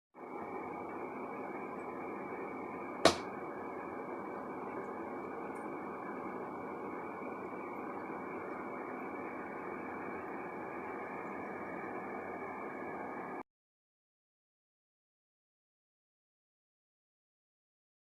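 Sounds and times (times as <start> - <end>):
room noise hum: 0.2 - 13.4.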